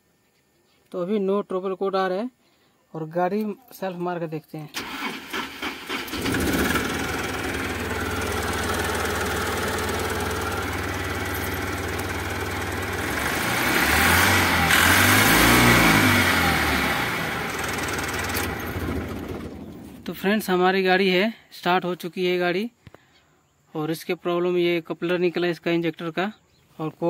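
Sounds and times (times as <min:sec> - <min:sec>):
engine idling and revving: 0:05.5 - 0:20.0.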